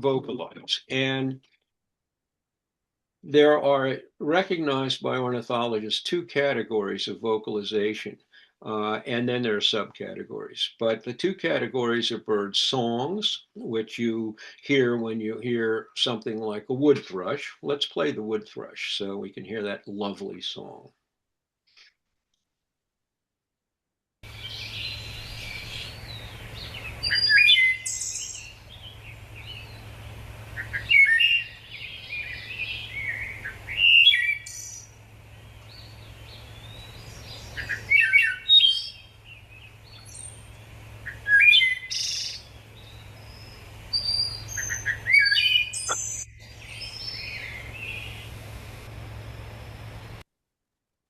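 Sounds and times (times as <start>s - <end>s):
bird song flute-like phrases: 24.5s - 28.8s, 30.6s - 34.8s, 37.5s - 39.0s, 41.1s - 48.2s
faint low hum: 38.8s - 50.2s.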